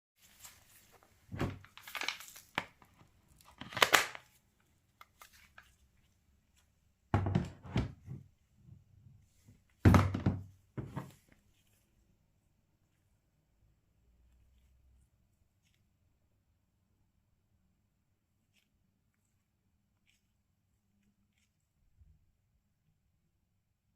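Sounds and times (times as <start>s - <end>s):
crinkling and rustling: 0.2s - 13.4s.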